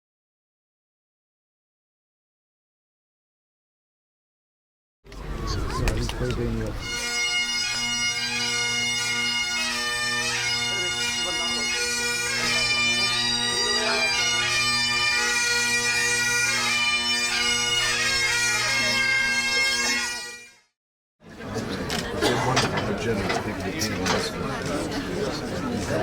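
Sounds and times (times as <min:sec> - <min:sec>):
bagpipes playing a tune: 0:05.4 - 0:20.7.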